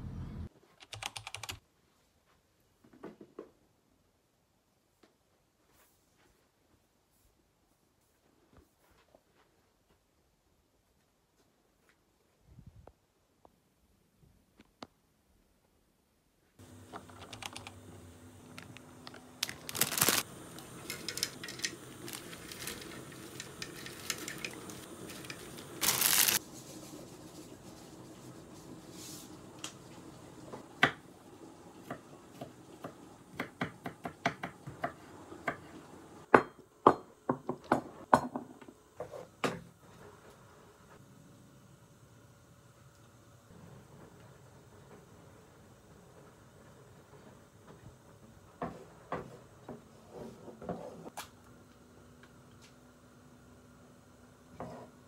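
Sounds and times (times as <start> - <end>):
low background hum: 15.4 - 55.0
rustling bursts: 22.0 - 26.4.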